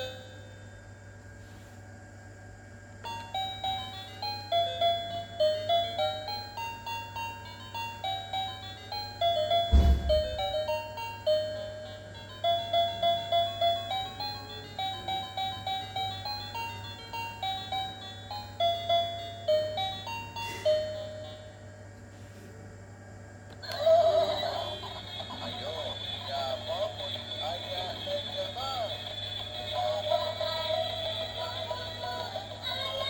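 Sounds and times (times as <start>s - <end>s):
thump: 9.7s - 10.5s.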